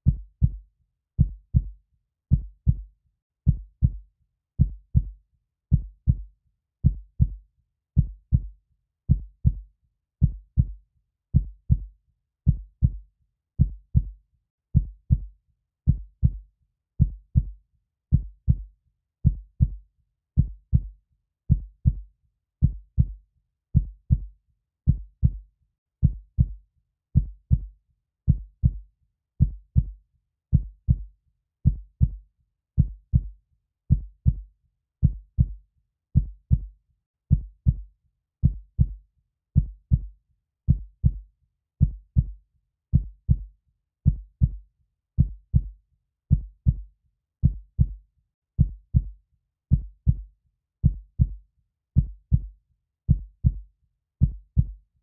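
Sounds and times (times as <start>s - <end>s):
heartbeat thumps: 27.2s - 27.7s, 28.3s - 28.8s, 29.4s - 29.9s, 36.2s - 36.7s, 37.3s - 37.8s, 38.4s - 39.0s, 39.6s - 40.1s, 40.7s - 41.2s, 44.1s - 44.6s, 45.2s - 45.7s, 46.3s - 46.8s, 47.4s - 48.0s, 48.6s - 49.1s, 49.7s - 50.2s, 50.8s - 51.4s, 52.0s - 52.5s, 53.1s - 53.6s, 54.2s - 54.8s.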